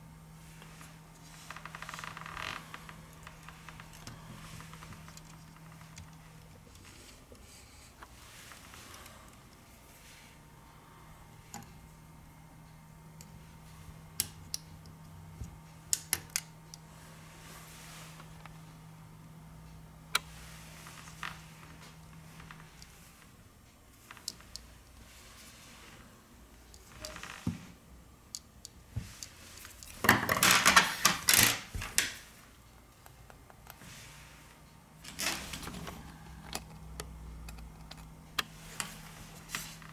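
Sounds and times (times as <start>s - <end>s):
faint steady hum: 0.0s - 39.9s
objects clattering and scraping: 29.9s - 32.2s.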